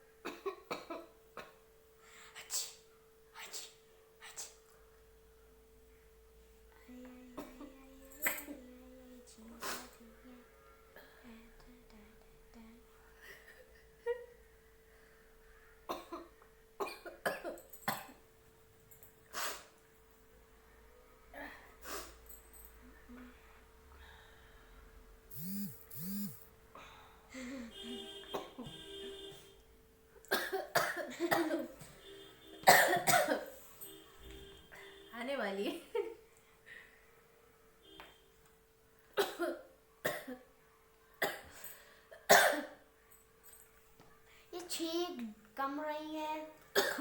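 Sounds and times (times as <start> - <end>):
faint steady hum: 0.0 - 47.0
person coughing: 30.3 - 31.7, 32.6 - 33.6, 42.2 - 42.8, 46.8 - 47.0.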